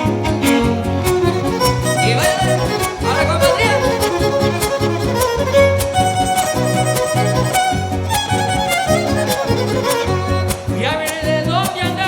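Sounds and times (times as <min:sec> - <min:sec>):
violin melody: 0:00.0 - 0:11.3
strummed guitars: 0:00.0 - 0:12.0.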